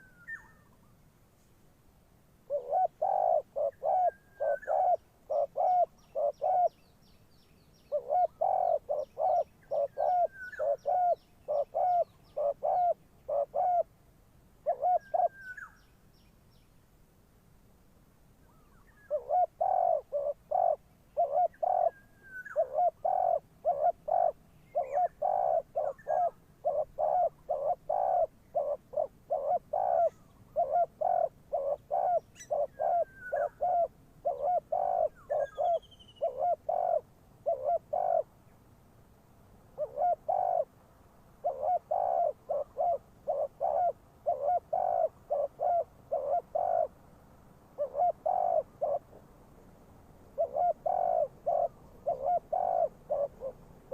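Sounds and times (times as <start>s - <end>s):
dove cooing: 0.0s - 0.7s, 2.4s - 6.8s, 7.9s - 14.0s, 14.6s - 15.8s, 18.6s - 38.3s, 39.8s - 40.8s, 41.4s - 47.0s, 47.7s - 49.3s, 50.2s - 53.9s
faint bird chirps: 0.0s - 1.6s, 2.5s - 13.9s, 14.6s - 17.0s, 18.4s - 38.6s, 39.7s - 40.7s, 41.4s - 47.0s, 47.8s - 53.9s.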